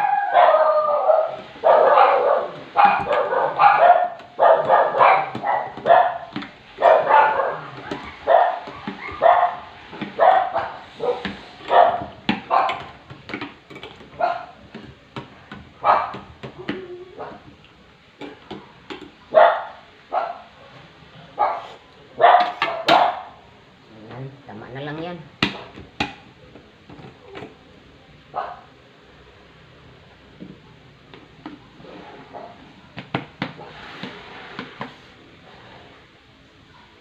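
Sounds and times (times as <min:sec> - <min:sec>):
dog barking: 0:00.0 - 0:12.9, 0:14.2 - 0:14.6, 0:15.8 - 0:16.3, 0:19.3 - 0:20.5, 0:21.4 - 0:23.4, 0:28.3 - 0:28.7.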